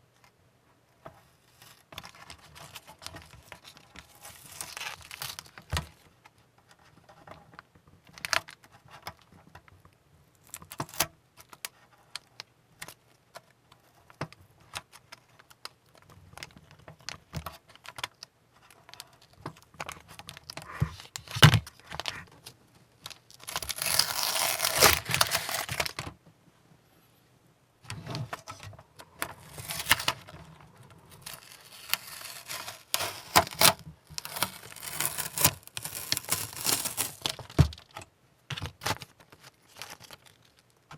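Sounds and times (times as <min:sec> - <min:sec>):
tape peeling and crinkling: 0:01.6 - 0:05.9, 0:23.0 - 0:26.0, 0:29.2 - 0:38.0, 0:38.6 - 0:40.7.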